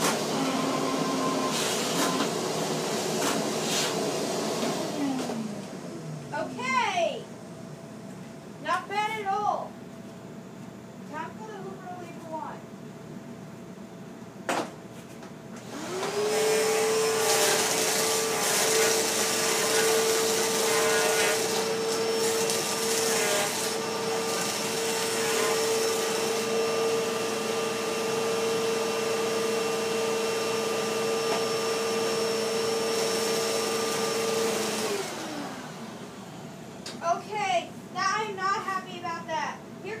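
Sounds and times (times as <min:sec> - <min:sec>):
vacuum cleaner motor whining: 0:00.0 - 0:06.4, 0:15.6 - 0:36.9.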